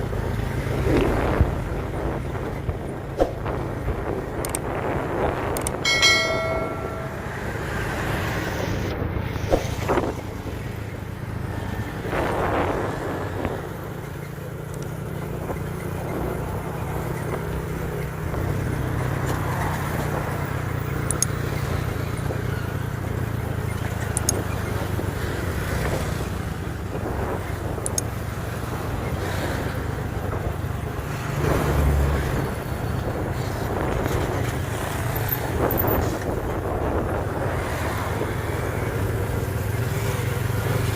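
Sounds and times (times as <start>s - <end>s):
road and wind noise: 0.0s - 40.9s
high pitched tone: 5.9s - 7.8s.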